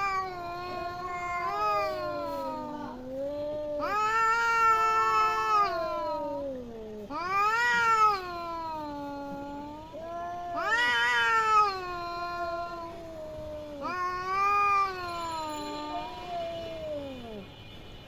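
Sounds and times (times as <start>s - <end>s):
cats yowling in a fight: 0.0s - 17.5s.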